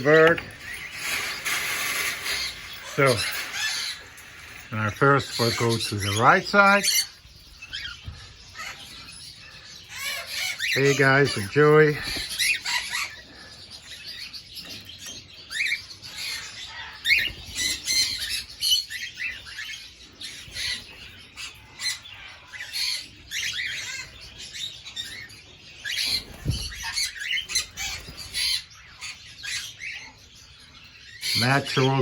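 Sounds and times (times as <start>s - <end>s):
wings flapping: 0.0s - 4.8s, 11.2s - 12.6s
cockatiels chirping and squawking: 0.0s - 32.0s.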